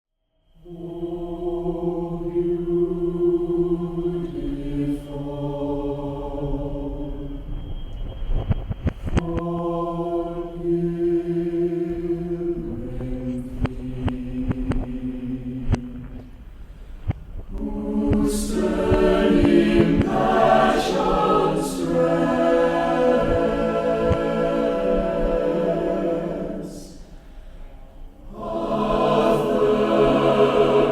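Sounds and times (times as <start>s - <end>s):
choir-like voices sustained chords: 0.5s - 7.8s, 9.2s - 16.5s, 17.5s - 30.9s
held chord background music: 18.6s - 27.0s, 28.3s - 30.9s.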